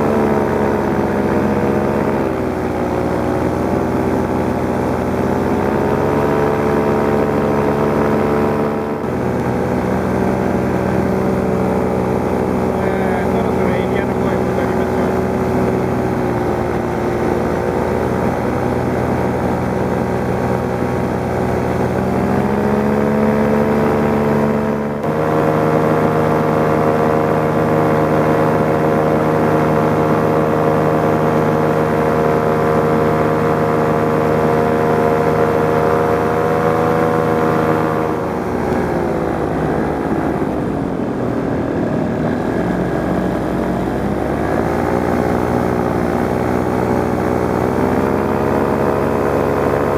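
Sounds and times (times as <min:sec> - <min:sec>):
paramotor engine and propeller: 0:00.0 - 0:49.9.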